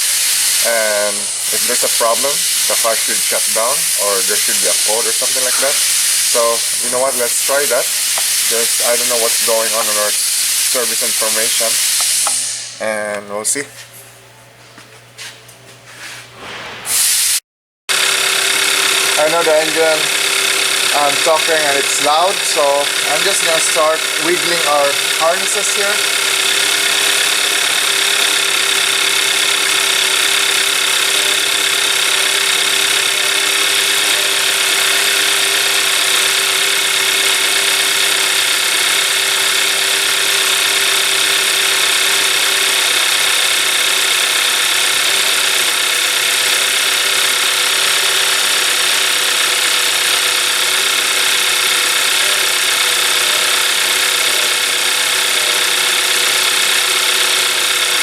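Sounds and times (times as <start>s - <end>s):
car engine idling: 18.0s - 58.0s.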